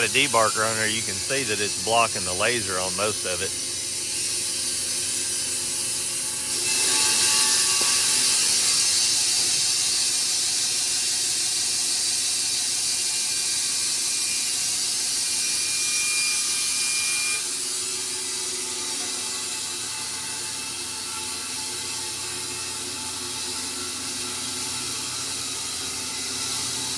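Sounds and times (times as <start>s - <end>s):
band saw blade cutting log: 0.0s - 3.6s, 6.2s - 10.0s.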